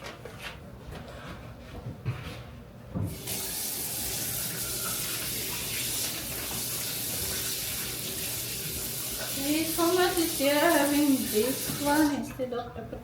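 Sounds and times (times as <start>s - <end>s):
kitchen tap running: 3.1s - 12.3s.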